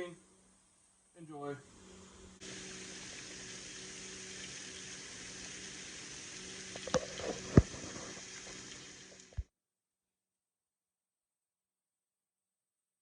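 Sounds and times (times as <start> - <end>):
low hum: 1.6 - 9.4
meat sizzling on a griddle: 2.4 - 9.4.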